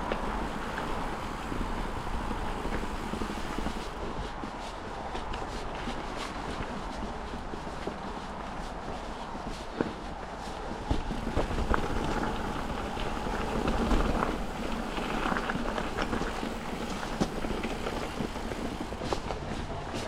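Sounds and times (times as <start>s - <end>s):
bike tyres on dirt trail: 0.0s - 20.0s
wind on microphone: 0.0s - 20.0s
bike clicks and knocks: 10.8s - 20.0s.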